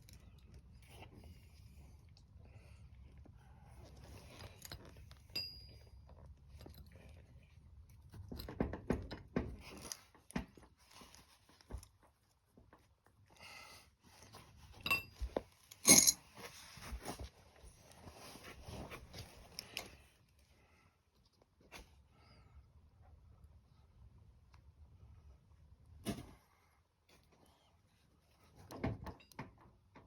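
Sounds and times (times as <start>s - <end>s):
hand tools clinking on metal: 15.8s - 16.2s.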